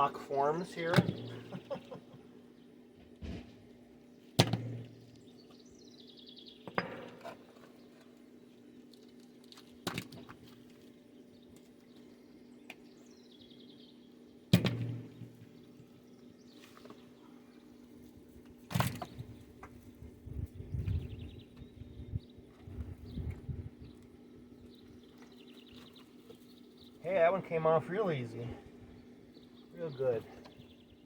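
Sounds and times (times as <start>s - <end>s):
knocks on wooden forms: 14.5s - 15.3s.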